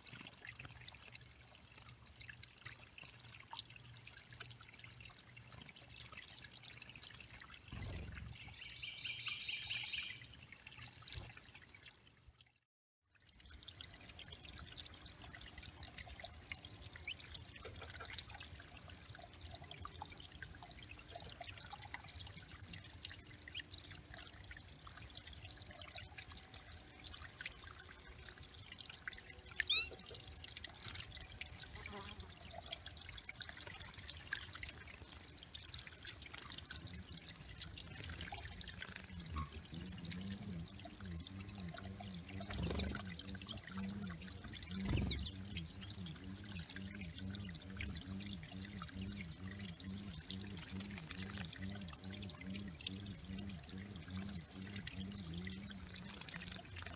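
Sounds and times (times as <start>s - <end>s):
water burbling: 0.0s - 12.4s, 13.2s - 56.9s
water trickling and dripping: 0.0s - 56.9s
short high bird chirp: 29.6s - 30.0s.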